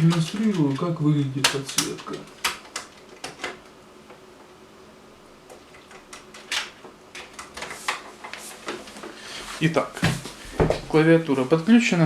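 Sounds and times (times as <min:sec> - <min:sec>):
keyboard handling clicks and knocks: 0:00.0 - 0:04.2, 0:05.5 - 0:08.9.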